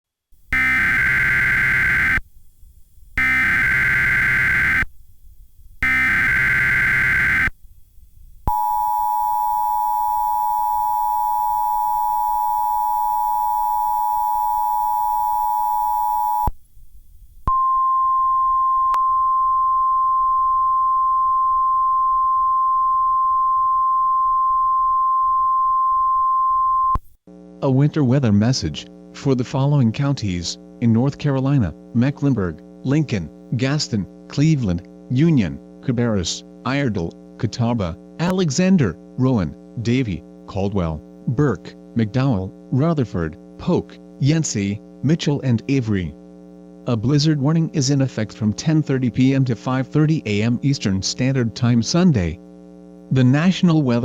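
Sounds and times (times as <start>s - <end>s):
two-tone attention signal: 0.6s - 2.2s, 3.2s - 4.8s, 5.8s - 7.5s
warbling data bursts: 0.6s - 2.2s, 3.2s - 4.8s, 5.8s - 7.5s
steady alert tone: 3.2s - 4.8s, 5.8s - 7.5s.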